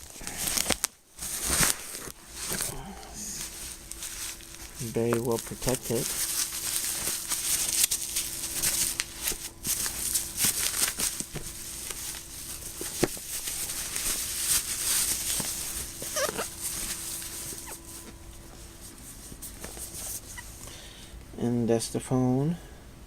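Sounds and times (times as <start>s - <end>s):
cardboard and plastic wrap rustling: 0.0s - 20.6s
packaging squeak: 4.5s - 18.1s, 20.0s - 20.5s.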